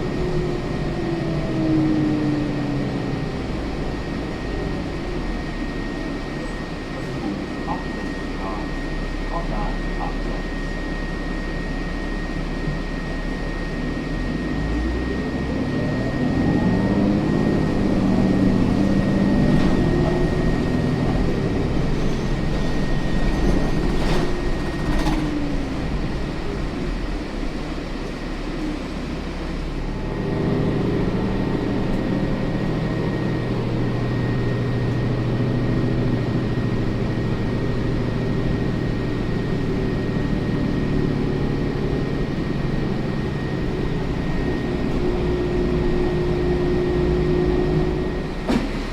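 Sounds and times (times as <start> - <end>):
bus engine and road noise: 0.0 - 48.9.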